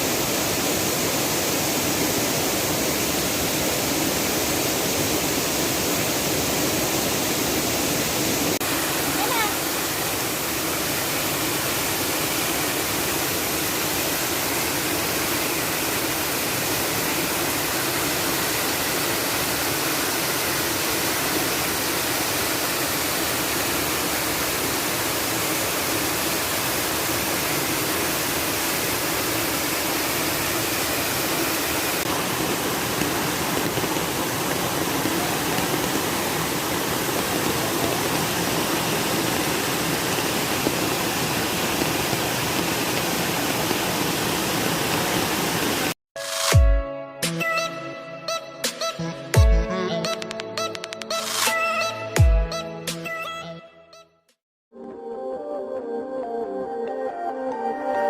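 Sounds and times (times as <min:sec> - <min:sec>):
waterfall rushing: 0:00.0 - 0:46.0.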